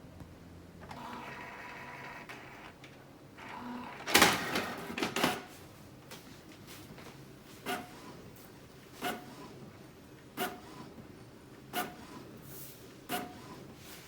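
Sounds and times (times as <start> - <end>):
printer motor whine: 0.8 - 5.0
printer clattering clunks: 4.0 - 5.5.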